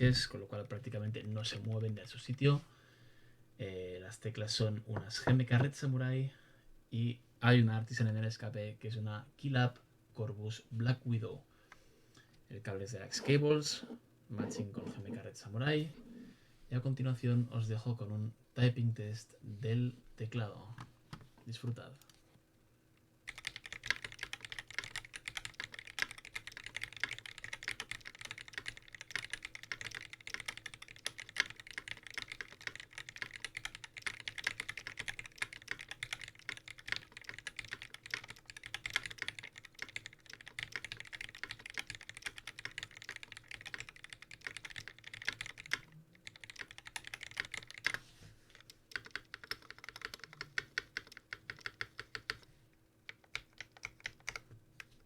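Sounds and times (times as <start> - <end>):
mechanical keyboard typing: 1.2 - 2.1, 23.3 - 48.0, 48.6 - 52.4, 53.1 - 54.4.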